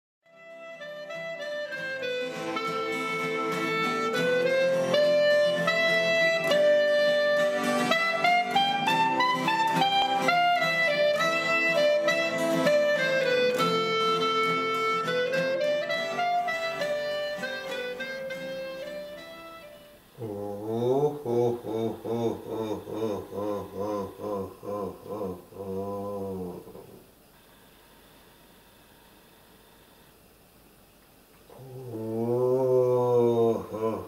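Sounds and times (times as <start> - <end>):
wind instrument melody: 0.2 - 20.2.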